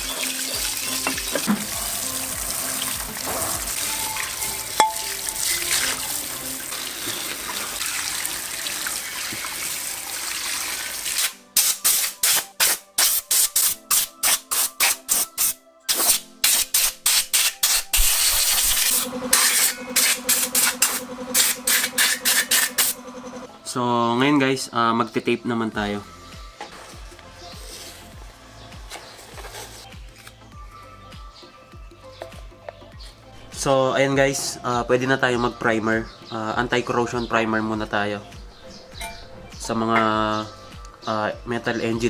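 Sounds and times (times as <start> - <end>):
water running: 0.0 - 11.4
faint background music: 0.0 - 42.0
wet sandpaper rubbing on metal: 11.0 - 23.0, 27.6 - 28.2.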